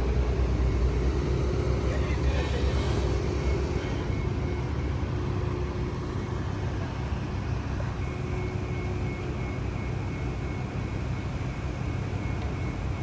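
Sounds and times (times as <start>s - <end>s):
low outdoor rumble: 0.0s - 5.1s.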